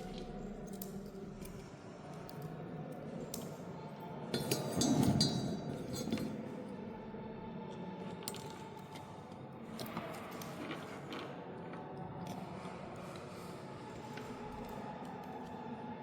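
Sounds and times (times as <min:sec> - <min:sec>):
metallic clinks of small tools: 0:04.4 - 0:06.4.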